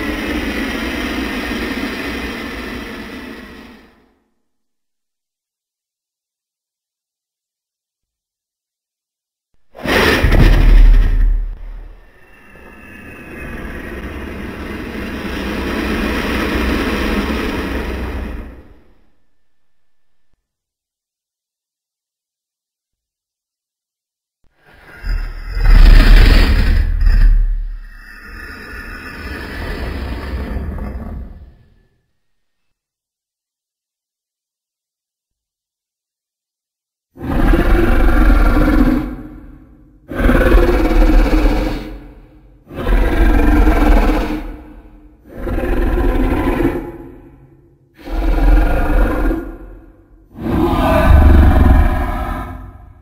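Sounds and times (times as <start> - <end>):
low rumbling dragon roar: 9.8 - 19.3, 25.0 - 31.8, 37.2 - 53.0.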